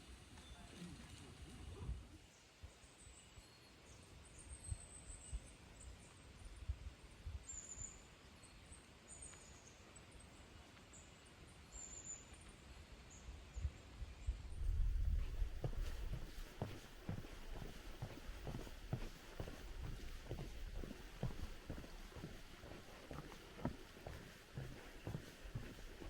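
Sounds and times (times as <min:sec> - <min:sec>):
low rumble with soft thumps: 0:14.5 - 0:26.0
small birds chirping: 0:14.6 - 0:26.0.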